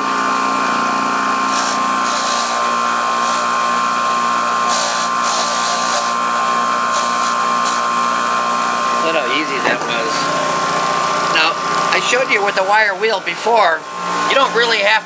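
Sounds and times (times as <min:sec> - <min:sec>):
wire wheel motor whine: 0:00.0 - 0:12.0
bolt scratching on wire bristles: 0:01.5 - 0:03.6, 0:04.6 - 0:06.2, 0:06.9 - 0:07.9.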